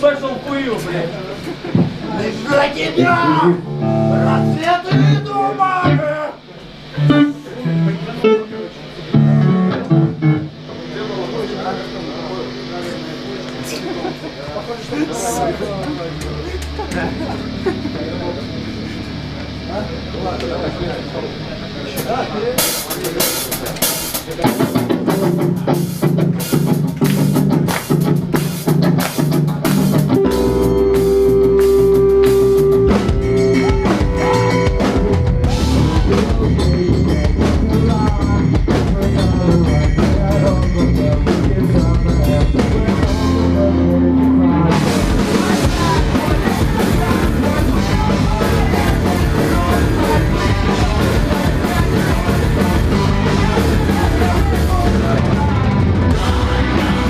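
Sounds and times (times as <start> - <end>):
rock band playing live: 3.4 - 11.5, 15.4 - 57.0
drum beat: 22.0 - 39.1, 44.7 - 57.0.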